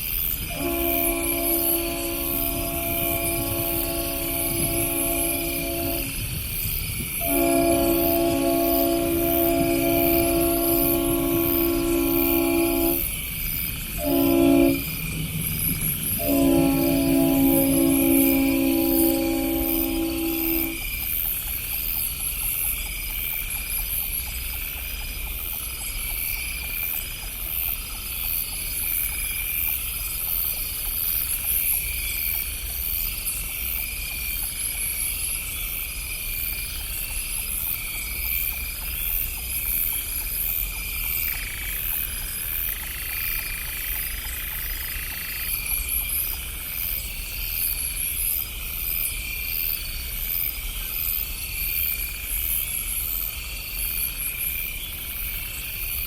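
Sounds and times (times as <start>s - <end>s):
faint steady tone: 0.0s - 6.6s, 7.2s - 21.1s
frogs and insects chirping: 0.0s - 56.0s
steady low rumble: 0.5s - 20.8s.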